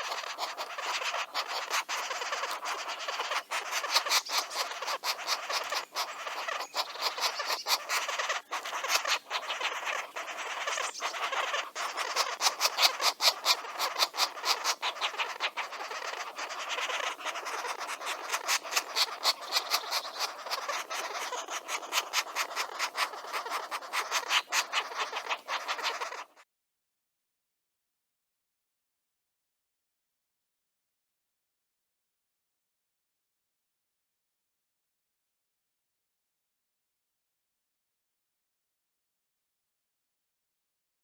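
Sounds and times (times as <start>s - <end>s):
background bird calls: 0.0s - 26.4s
sharp bird chirps: 0.0s - 26.4s.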